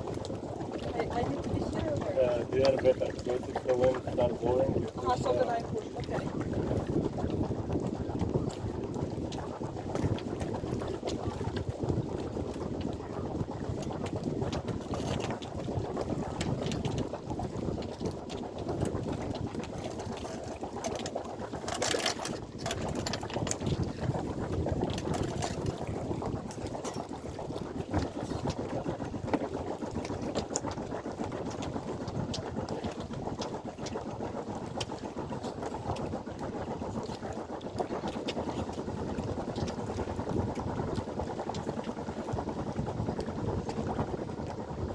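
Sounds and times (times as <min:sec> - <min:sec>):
water rushing: 0:00.0 - 0:12.3
wind noise: 0:00.0 - 0:44.9.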